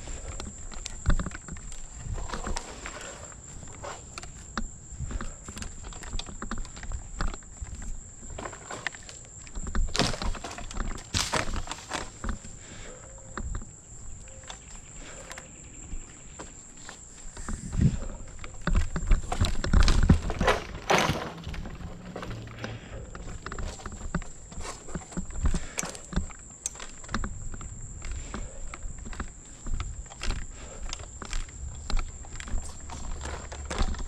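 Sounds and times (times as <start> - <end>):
branches crashing: 8.3 - 12.4, 18.7 - 24.2.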